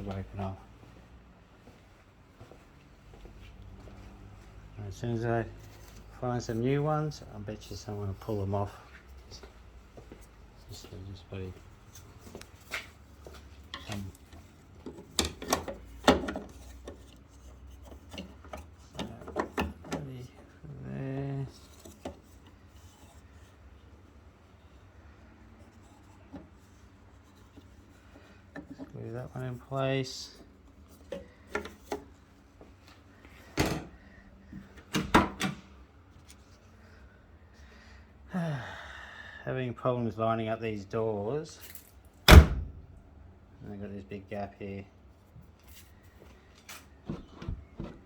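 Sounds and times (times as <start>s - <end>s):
car door clunking shut: 42.3s - 42.8s.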